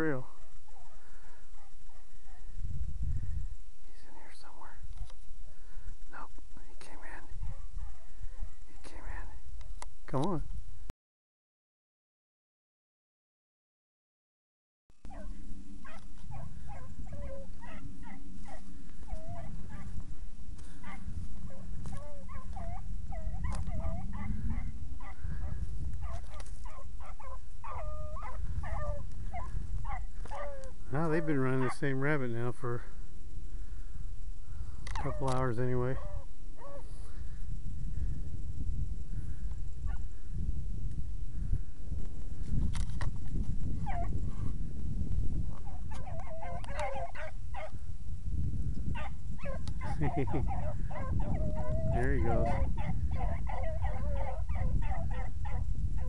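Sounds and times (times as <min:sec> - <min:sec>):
steady low rumble: 0:00.2 - 0:10.9, 0:15.1 - 0:31.2, 0:31.9 - 0:56.0
hounds baying: 0:00.4 - 0:02.5, 0:07.3 - 0:08.7, 0:15.1 - 0:31.9, 0:34.8 - 0:37.0, 0:39.9 - 0:40.1, 0:43.8 - 0:44.5, 0:45.5 - 0:47.8, 0:48.9 - 0:56.0.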